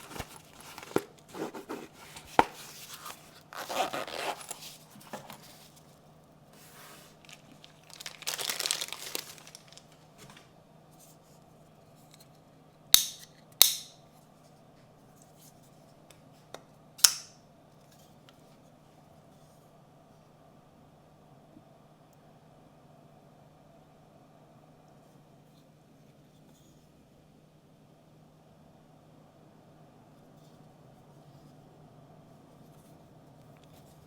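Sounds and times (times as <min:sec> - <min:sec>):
packaging tearing and crinkling: 0:00.0 - 0:04.9, 0:07.1 - 0:10.0.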